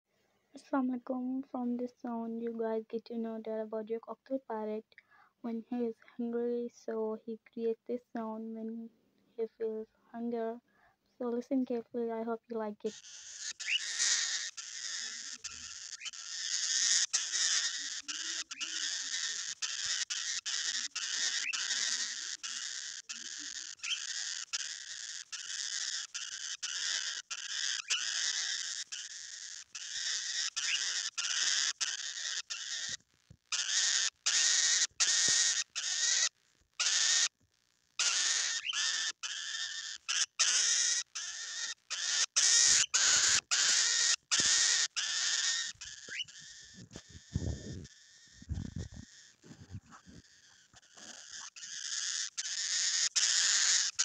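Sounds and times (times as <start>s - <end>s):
cockatiel calling: 12.9s - 37.3s, 38.0s - 54.0s.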